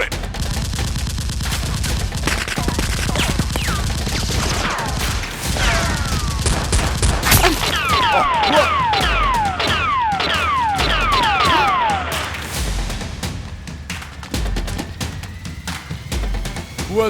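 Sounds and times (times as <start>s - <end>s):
gunshots: 0.0s - 14.9s
falling zinging whistles: 3.0s - 12.5s.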